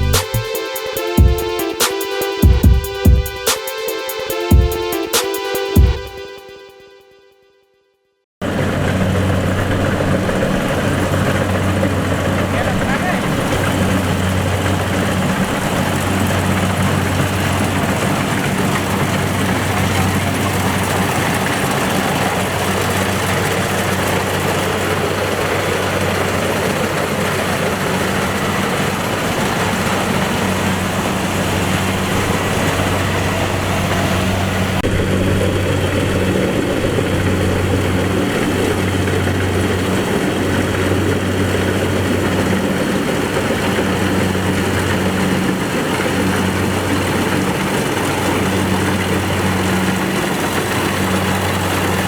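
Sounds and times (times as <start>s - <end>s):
combine harvester diesel drone: 0.0s - 6.2s, 8.4s - 52.0s
high rushing noise: 0.0s - 6.9s.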